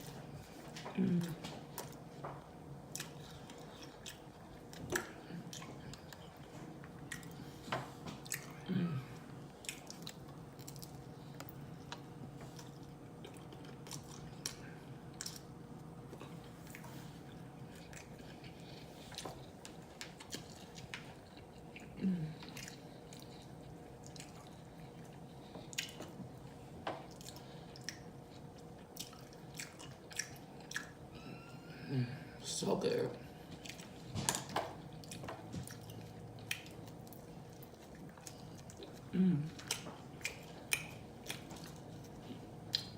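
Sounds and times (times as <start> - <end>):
open-mouthed chewing: 0.0 - 32.4, 33.1 - 42.9
faint background hum: 0.0 - 42.9
person humming: 0.9 - 1.5, 8.6 - 9.2, 22.0 - 22.4, 31.2 - 32.4, 39.1 - 39.6.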